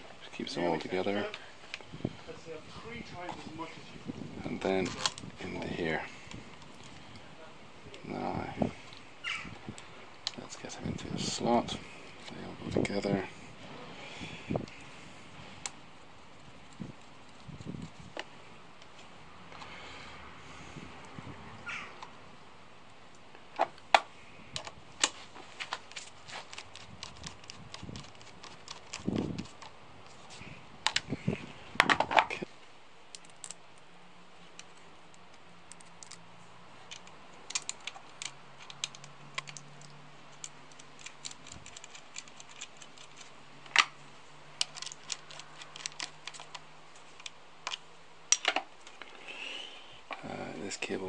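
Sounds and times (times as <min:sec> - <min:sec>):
small clicks and taps of parts: 0:30.8 - 0:31.1, 0:34.5 - 0:36.2, 0:36.8 - 0:43.9, 0:44.6 - 0:49.1.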